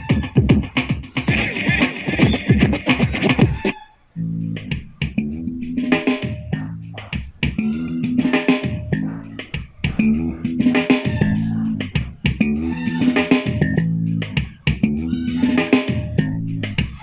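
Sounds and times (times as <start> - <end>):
guitar-led music with bass: 4.2 - 17.0.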